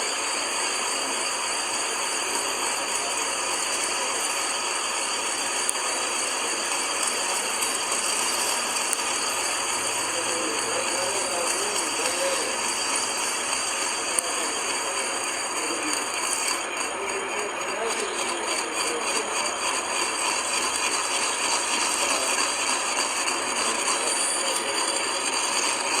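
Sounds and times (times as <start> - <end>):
metal lathe rattling: 0.0 - 26.0.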